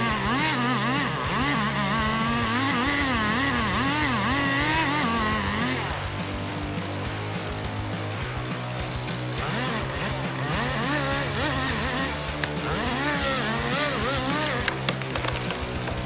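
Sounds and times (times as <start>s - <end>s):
background music: 0.0s - 16.0s
chainsaw engine revving: 0.0s - 16.0s
sharp clicks: 12.2s - 16.0s.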